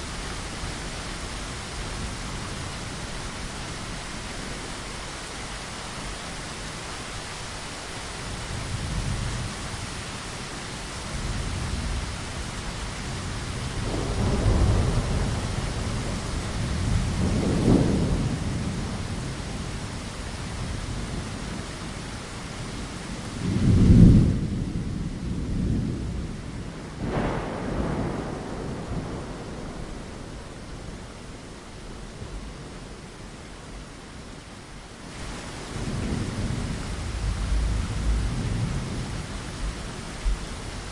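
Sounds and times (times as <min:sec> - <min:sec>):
rain hiss: 0:00.0 - 0:40.9
rolling thunder rumbling: 0:13.1 - 0:21.3, 0:23.4 - 0:33.1, 0:35.3 - 0:40.9.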